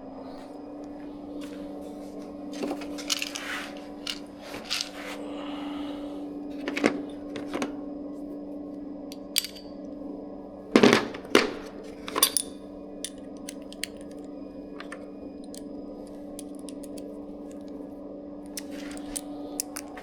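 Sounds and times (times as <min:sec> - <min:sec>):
steady low hum: 0:00.0 - 0:20.0
metallic clinks of tools: 0:09.1 - 0:09.7, 0:12.1 - 0:14.1.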